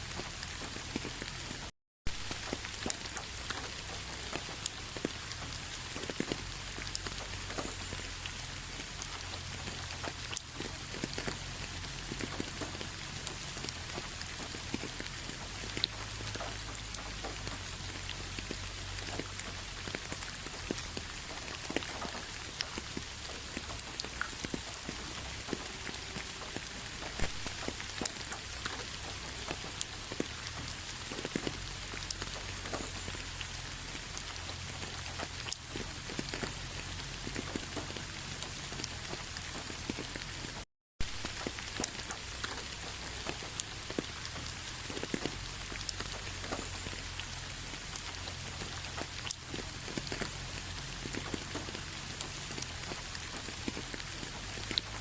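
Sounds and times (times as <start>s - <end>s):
raindrops tapping on surface: 0.0s - 55.0s
steady rain: 0.0s - 55.0s.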